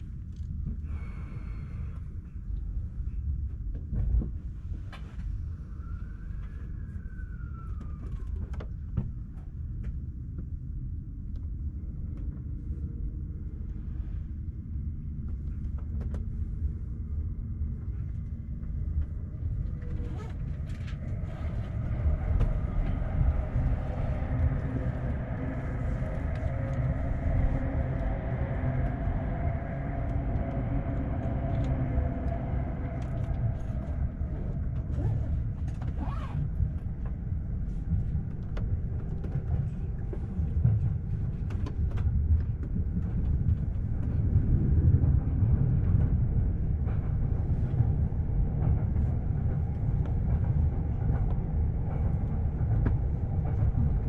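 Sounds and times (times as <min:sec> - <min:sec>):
train wheels rumbling on rail: 0:11.2 - 0:54.0
steady whine: 0:11.8 - 0:54.0.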